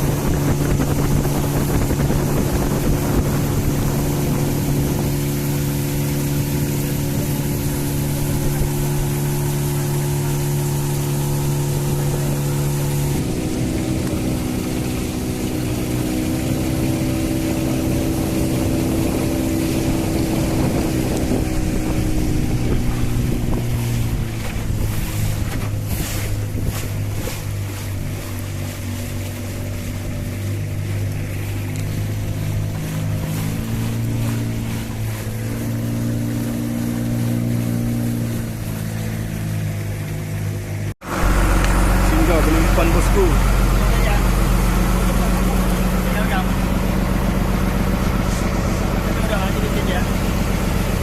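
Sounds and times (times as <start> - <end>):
wind buffeting microphone: 0.0 - 39.6
outboard motor running: 0.0 - 51.0
water rushing past hull: 0.0 - 51.0.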